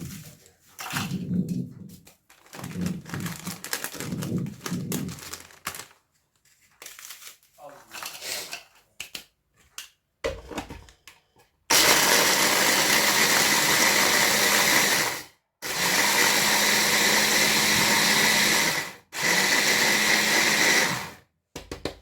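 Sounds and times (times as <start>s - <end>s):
kitchen grinder grinding biscuits: 11.7s - 21.3s.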